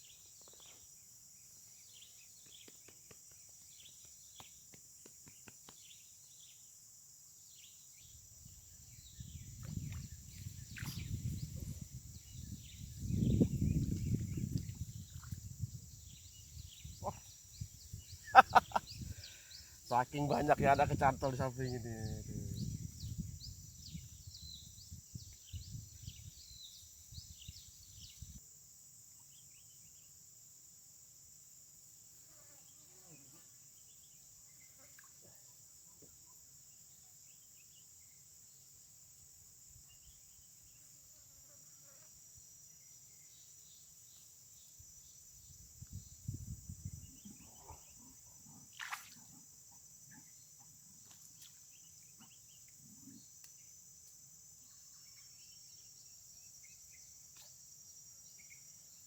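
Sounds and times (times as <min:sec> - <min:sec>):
high-pitched insect chorus: 0:00.0 - 0:59.0
click: 0:53.4 - 0:53.6.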